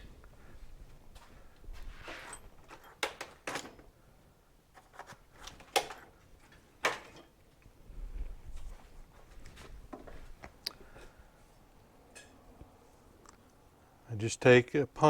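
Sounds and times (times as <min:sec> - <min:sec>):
soft rustle: 0:00.0 - 0:02.9, 0:07.7 - 0:11.7.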